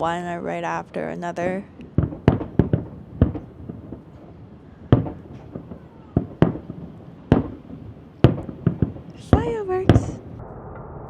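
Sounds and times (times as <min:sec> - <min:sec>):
fireworks bangs: 0:01.4 - 0:10.4
faint fireworks pops: 0:01.7 - 0:10.4.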